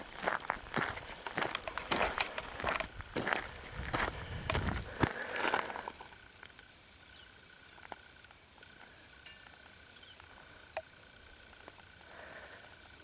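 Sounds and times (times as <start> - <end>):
footsteps on ground: 0.0 - 6.1
faint insect trill: 0.0 - 13.0
small ticks: 0.2 - 13.0.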